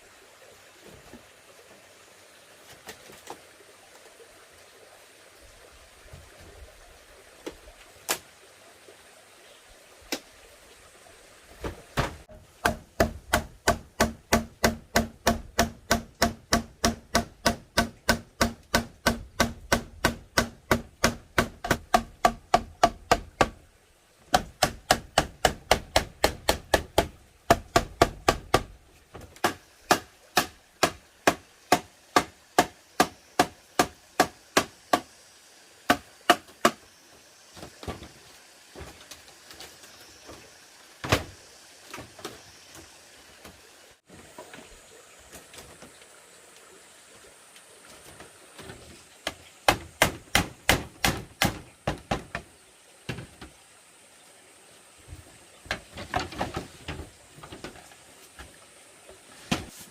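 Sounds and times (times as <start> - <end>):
hand tool striking bamboo: 12.0 - 23.6, 24.3 - 35.1, 35.9 - 36.8, 49.2 - 52.4.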